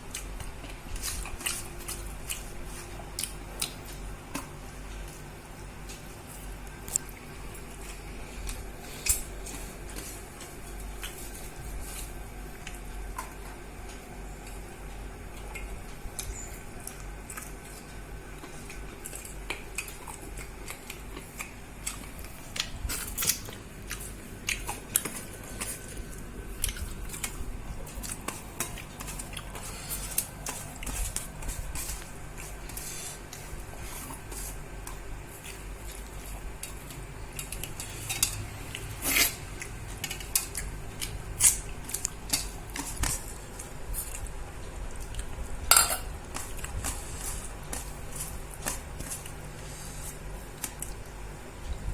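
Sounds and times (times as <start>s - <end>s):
steady low hum: 0.0s - 51.9s
dishes and cutlery clinking: 45.7s - 46.1s.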